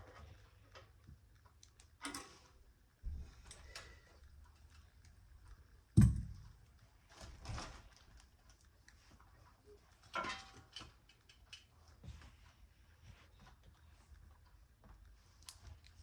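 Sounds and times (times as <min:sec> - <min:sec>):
clatter of bicycle parts: 0:10.0 - 0:11.8.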